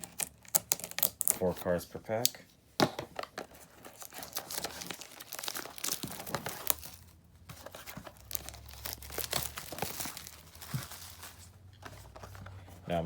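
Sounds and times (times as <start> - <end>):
plastic wrap and cardboard tearing: 0.0 - 1.8, 3.7 - 12.1.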